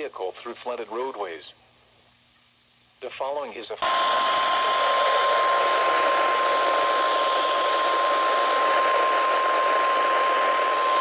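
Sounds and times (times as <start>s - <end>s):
steady alarm beep: 3.8s - 11.0s.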